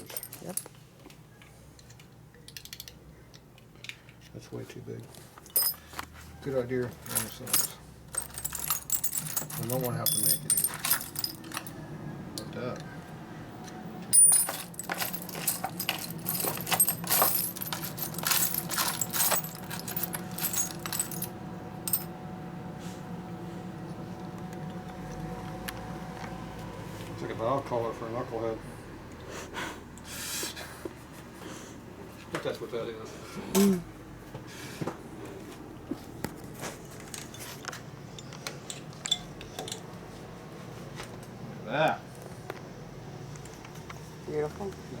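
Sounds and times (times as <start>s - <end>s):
metal washers clinking: 0.0s - 0.8s, 5.5s - 5.8s, 7.0s - 11.8s, 14.1s - 22.1s.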